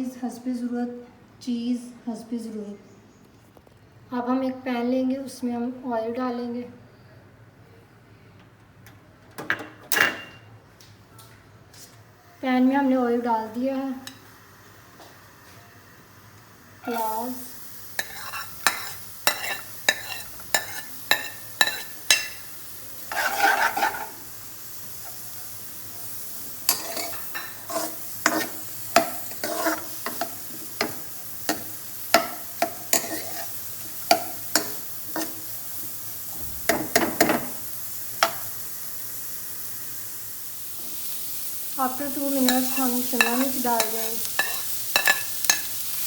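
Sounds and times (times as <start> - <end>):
onions sizzling in hot oil: 12.3 - 46.0
spoon tapping against pan: 30.0 - 33.2.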